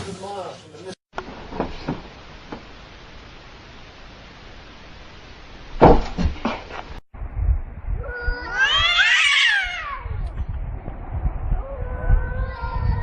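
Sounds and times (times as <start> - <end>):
sharp knocks: 5.8 - 6.5
cat yowling meow: 8.0 - 10.2, 11.6 - 13.0.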